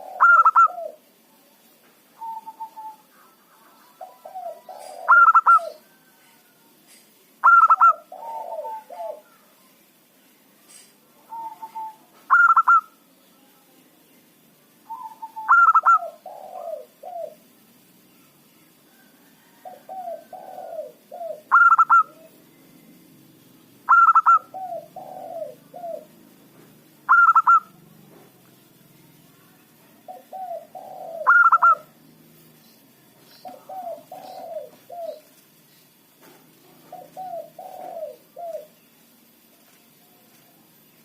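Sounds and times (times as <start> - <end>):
dove singing high note: 0.0 - 1.1, 2.1 - 9.7, 10.7 - 13.1, 14.8 - 17.6, 18.2 - 26.3, 26.9 - 27.9, 29.2 - 39.3
soft dove cooing: 0.0 - 1.1, 2.2 - 9.4, 10.7 - 13.0, 14.9 - 17.5, 18.9 - 22.4, 23.9 - 26.2, 27.1 - 27.8, 30.1 - 32.0, 33.2 - 35.4, 36.5 - 38.8.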